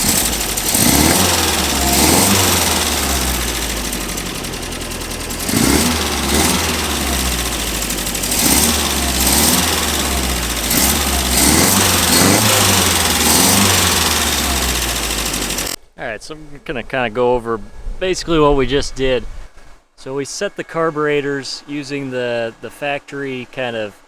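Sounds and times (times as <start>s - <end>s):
car engine revving: 0.0s - 15.8s.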